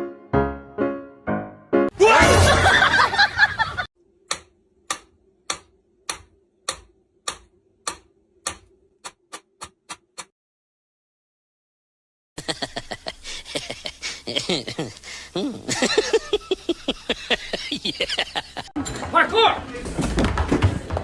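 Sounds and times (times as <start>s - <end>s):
faint steady hum: 12.4s - 18.6s.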